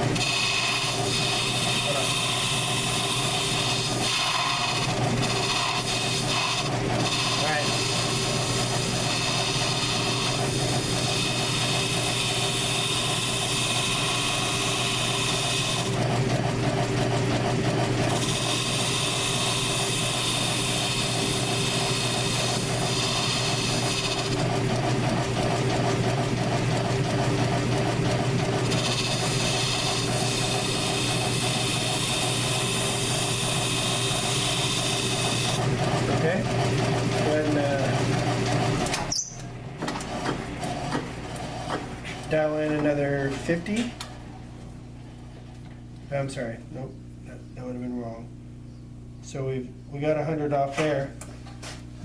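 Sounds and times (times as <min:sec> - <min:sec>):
lathe cutting noise: 0:00.0 - 0:44.3
lathe motor running: 0:00.0 - 0:46.2.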